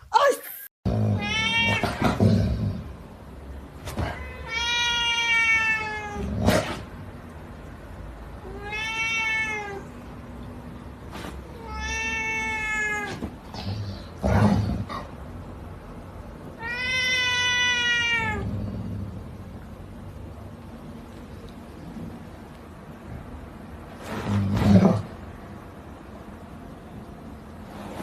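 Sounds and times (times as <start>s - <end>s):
cat meowing: 1.2s - 2.2s, 4.0s - 6.3s, 8.4s - 10.0s, 11.6s - 13.3s, 16.6s - 18.4s.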